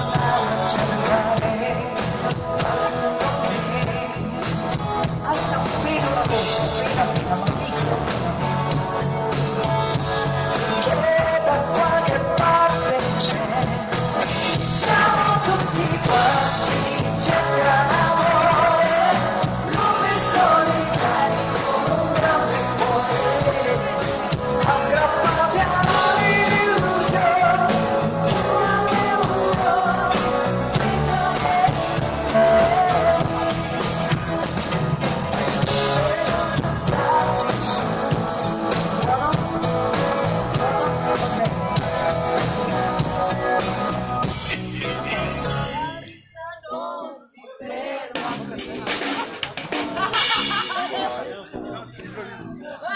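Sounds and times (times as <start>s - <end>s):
woman singing: 0.0s - 8.8s, 10.5s - 34.2s, 35.6s - 38.2s, 38.8s - 41.9s, 45.4s - 48.4s
live band playing pop-rock: 0.0s - 46.4s, 48.0s - 52.9s.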